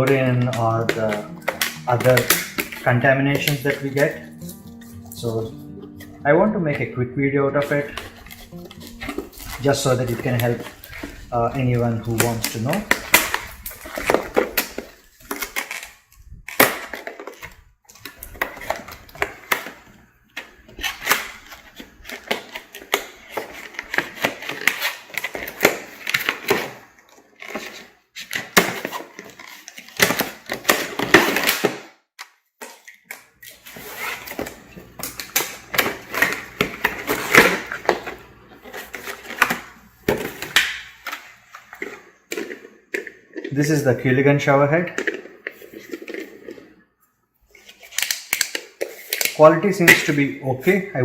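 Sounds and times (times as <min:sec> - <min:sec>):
cardboard and plastic packaging rustling: 0:00.0 - 0:06.8, 0:07.6 - 0:50.8.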